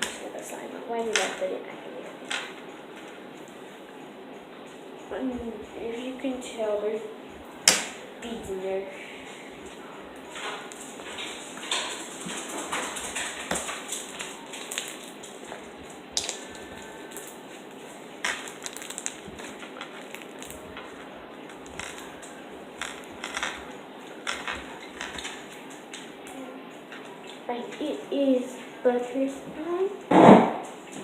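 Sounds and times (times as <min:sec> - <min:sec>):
slime with beads squeezed: 0:18.4 - 0:20.6.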